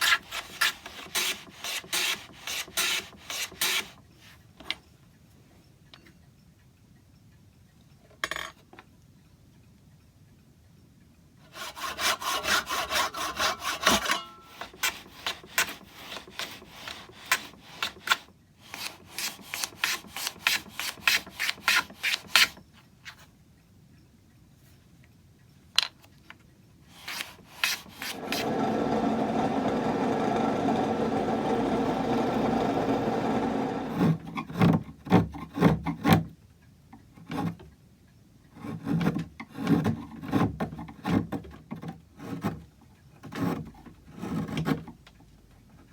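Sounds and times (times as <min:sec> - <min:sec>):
hand tool cutting wood: 0:00.0 - 0:04.0, 0:11.5 - 0:22.6, 0:26.9 - 0:36.3.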